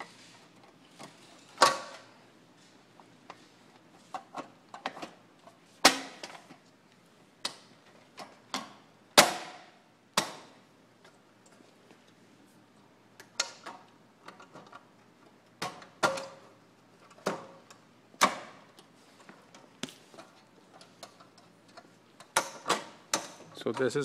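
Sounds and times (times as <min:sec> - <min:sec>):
hard clicks and knocks of hardware: 0:20.2 - 0:24.0.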